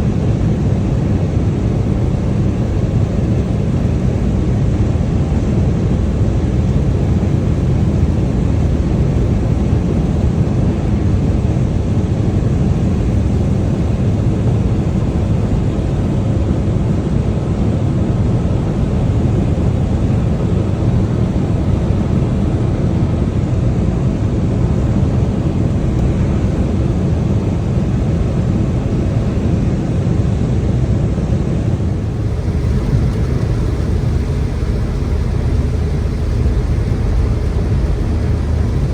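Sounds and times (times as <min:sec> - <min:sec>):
car road and tyre noise: 0:23.6 - 0:38.9
rain: 0:31.9 - 0:38.9.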